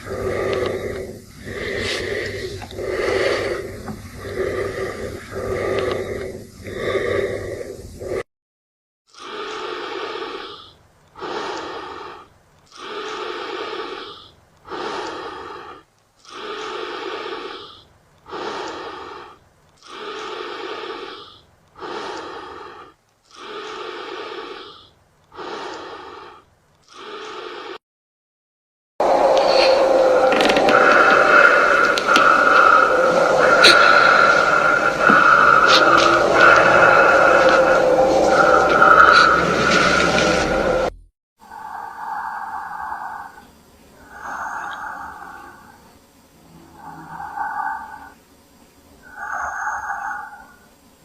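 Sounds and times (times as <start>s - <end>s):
person breathing heavily: 0.0s - 8.3s, 9.1s - 27.8s, 29.0s - 46.0s, 46.7s - 48.2s, 49.0s - 50.8s.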